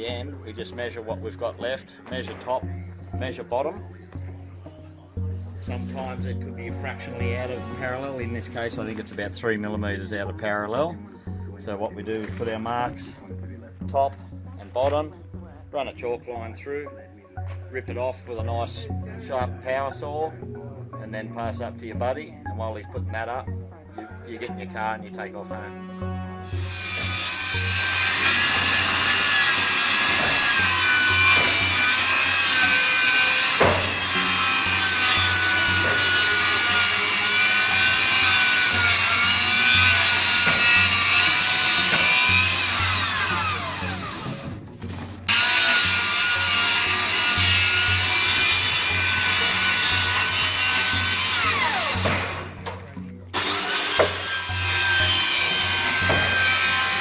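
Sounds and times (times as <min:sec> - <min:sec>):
circular saw cutting wood: 0:26.4 - 0:44.6, 0:45.3 - 0:52.6, 0:53.4 - 0:57.0.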